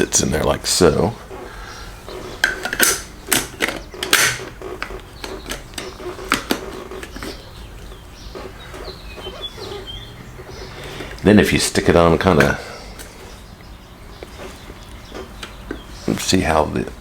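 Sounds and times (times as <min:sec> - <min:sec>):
faint high chirps: 0:04.6 - 0:11.5.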